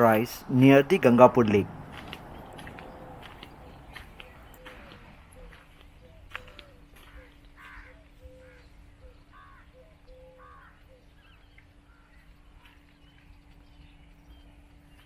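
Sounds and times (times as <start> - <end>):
birds calling: 0.0 - 4.6.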